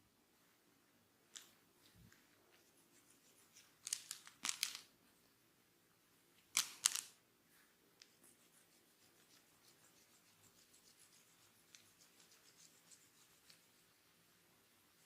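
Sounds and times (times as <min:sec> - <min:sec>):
hands rubbing hair: 0:01.4 - 0:04.9, 0:08.0 - 0:15.0.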